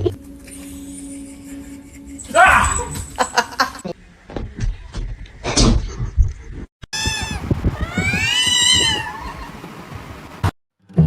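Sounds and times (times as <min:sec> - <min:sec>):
knocks and rustling: 0:04.2 - 0:09.1
cat meowing: 0:07.0 - 0:09.6.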